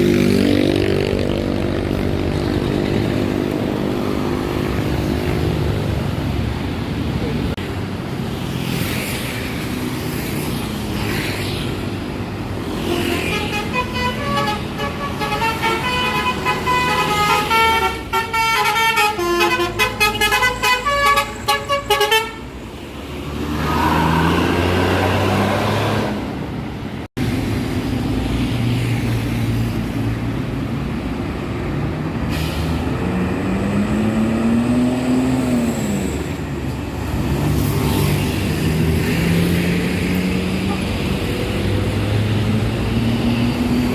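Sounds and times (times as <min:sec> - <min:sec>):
bus engines running: 0:00.0 - 0:43.9
musical bus horn tune: 0:12.8 - 0:22.5
engine revving: 0:23.1 - 0:26.4, 0:32.7 - 0:43.9.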